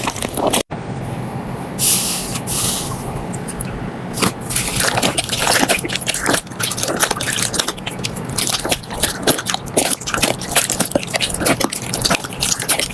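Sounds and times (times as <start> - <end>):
slime squelching and crackling: 4.2 - 12.9.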